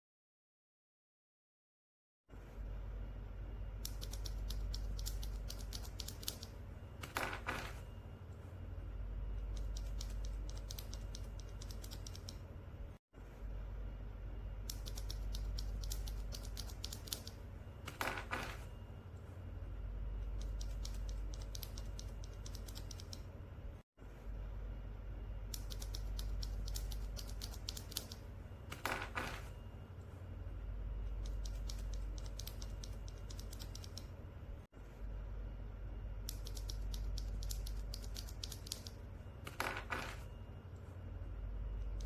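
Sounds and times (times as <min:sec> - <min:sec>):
low steady hum: 0:02.3 - 0:42.0
mechanical keyboard key clacks: 0:03.8 - 0:07.2, 0:25.5 - 0:28.2, 0:36.3 - 0:39.0.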